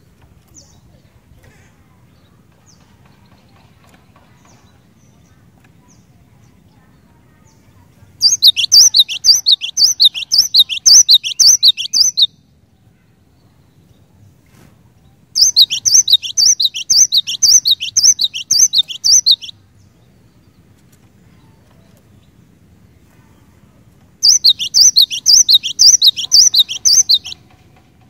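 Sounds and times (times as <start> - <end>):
bird singing whistled phrase: 8.2 - 12.4, 15.4 - 19.5, 24.2 - 27.4.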